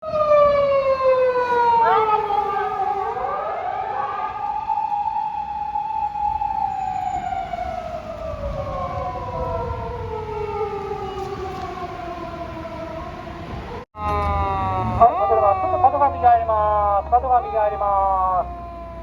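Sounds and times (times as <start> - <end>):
siren wailing: 0.0 - 19.0.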